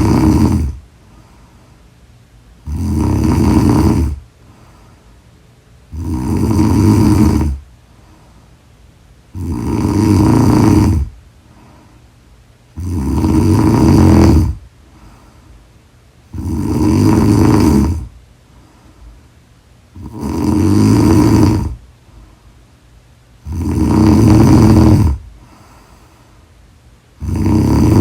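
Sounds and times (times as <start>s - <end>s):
woman snoring loudly: 0.0s - 0.8s, 2.6s - 4.2s, 5.9s - 7.6s, 9.3s - 11.2s, 12.7s - 14.6s, 16.3s - 18.2s, 19.9s - 21.8s, 23.4s - 25.3s, 27.2s - 28.0s
quiet breaths: 0.0s - 28.0s.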